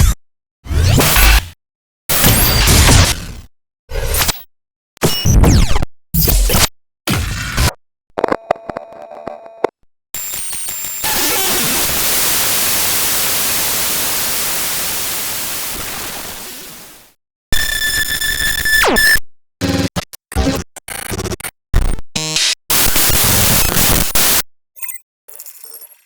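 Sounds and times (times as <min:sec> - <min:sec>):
chopped electronic glitches: 0:09.6 - 0:13.9, 0:17.6 - 0:26.0
static hiss burst: 0:10.7 - 0:17.1.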